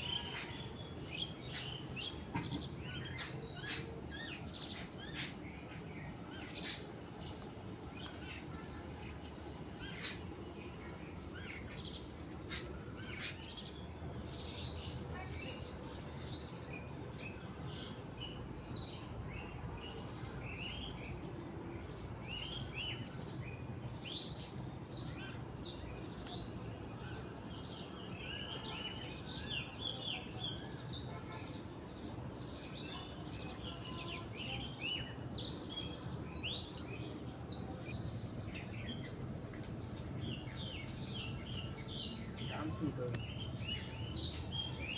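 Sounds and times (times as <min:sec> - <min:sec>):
small birds chirping: 0:00.0 - 0:44.9.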